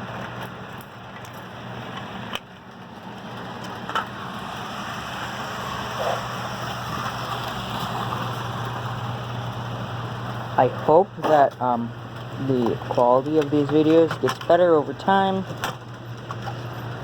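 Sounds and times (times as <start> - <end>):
wheels rolling on track: 0.0 - 17.0
model train motor hum: 3.0 - 10.9.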